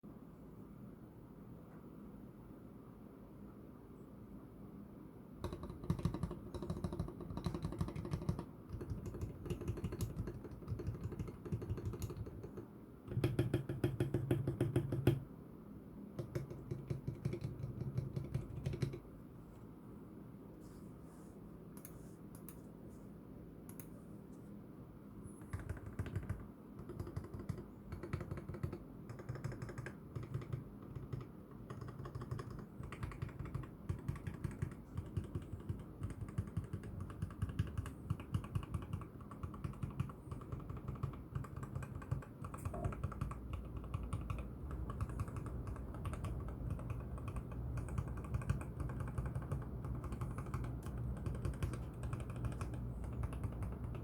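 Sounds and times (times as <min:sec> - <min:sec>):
steady low hum: 0:00.0 - 0:54.0
mechanical keyboard typing: 0:05.4 - 0:15.2, 0:16.2 - 0:19.0, 0:25.4 - 0:54.0.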